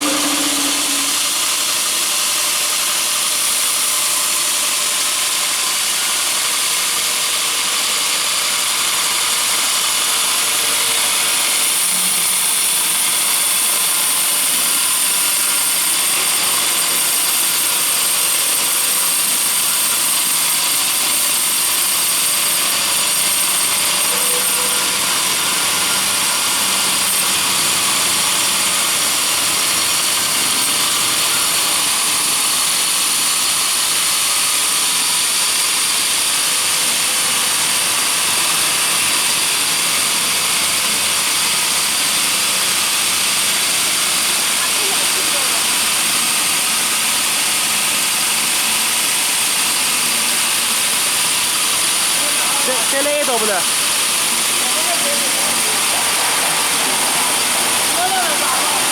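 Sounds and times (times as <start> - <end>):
band sawmill sawing wood: 0.0 - 58.9.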